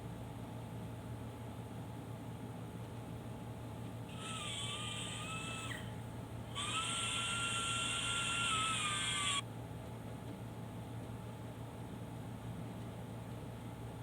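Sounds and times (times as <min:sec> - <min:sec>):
power tool motor whining: 0:04.1 - 0:09.4.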